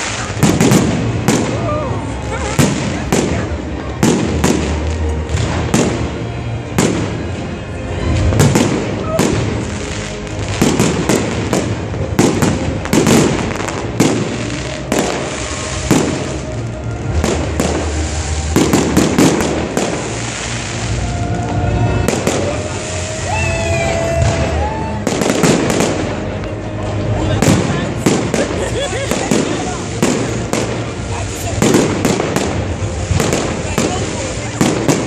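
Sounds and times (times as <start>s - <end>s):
low rumble of echoing explosions: 0.0s - 23.0s, 24.2s - 35.0s
fireworks bangs and crackles: 0.0s - 35.0s.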